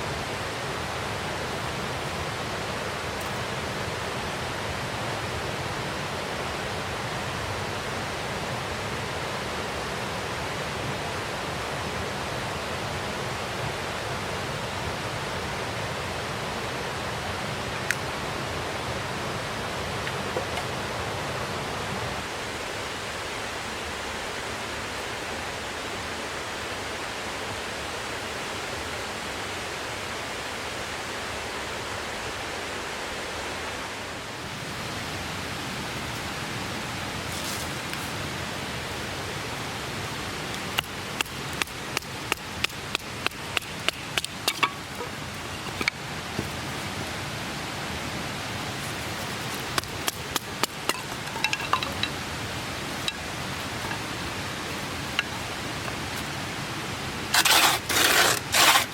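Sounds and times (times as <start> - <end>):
stream rushing: 0.0 - 58.9
sharp wooden knocks: 40.8 - 46.5, 49.8 - 52.2.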